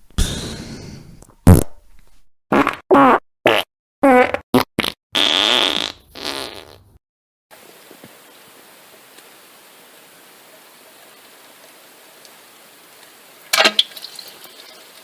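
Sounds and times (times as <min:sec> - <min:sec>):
fart sound effects: 0:01.4 - 0:01.8, 0:02.5 - 0:07.0.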